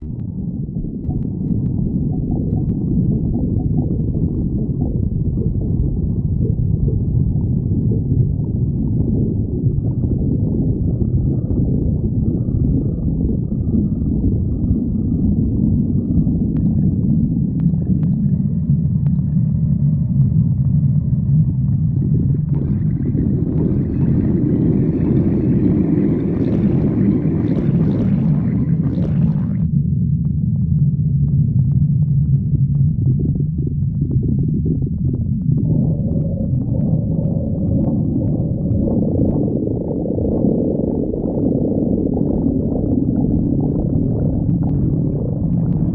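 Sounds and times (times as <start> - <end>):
stomach growling: 0.0 - 45.9.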